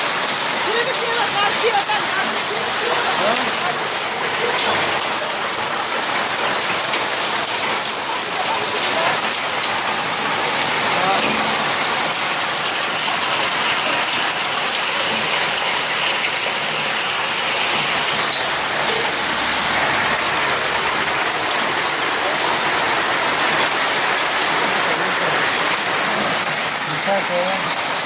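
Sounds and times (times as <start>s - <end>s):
heavy rain and hail pelting: 0.0s - 28.0s.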